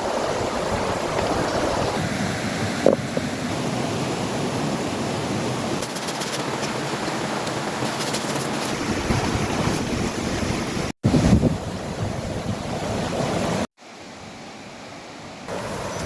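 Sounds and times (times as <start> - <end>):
crackling rustle: 5.8 - 9.2
strong wind rushing: 8.8 - 13.7.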